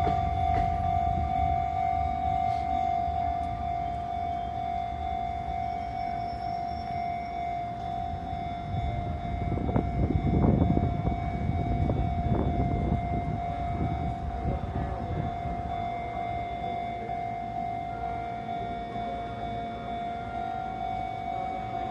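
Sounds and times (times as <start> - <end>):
train wheels clattering: 0.0 - 1.4
level crossing alarm: 0.0 - 21.9.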